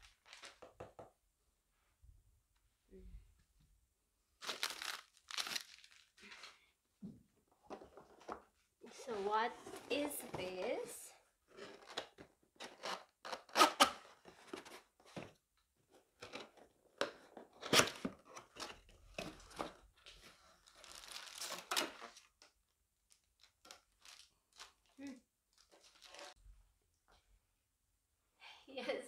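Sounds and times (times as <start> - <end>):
plastic packaging crinkling and tearing: 4.4 - 6.5, 20.6 - 22.3, 23.1 - 26.4.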